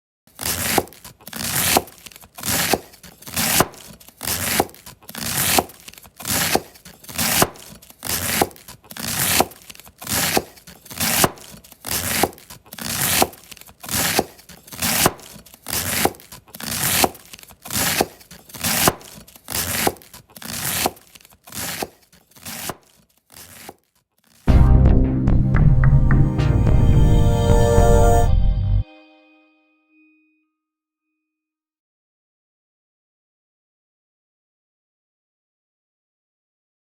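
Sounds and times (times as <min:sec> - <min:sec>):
knife shredding cabbage: 0:00.3 - 0:24.5.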